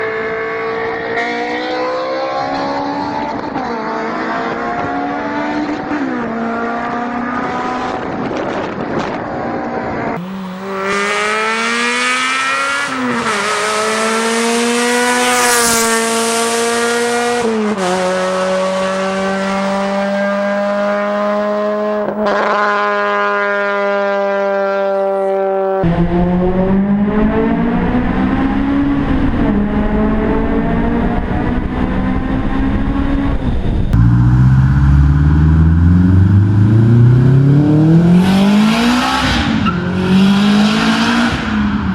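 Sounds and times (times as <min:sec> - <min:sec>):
car engine revving hard: 0:10.2 - 0:41.9.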